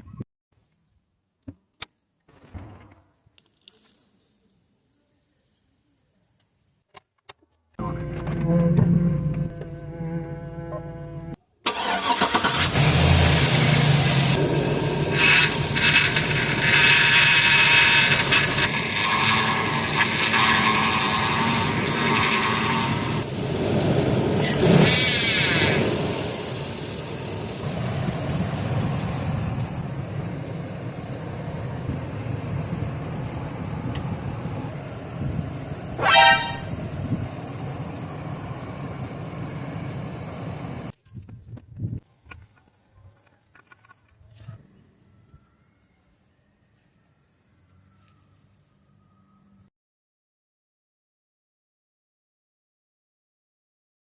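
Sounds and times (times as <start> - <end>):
engine running: 7.8 - 40.9
high whine: 14.3 - 40.9
sharp pitched chirp: 36.0 - 36.8.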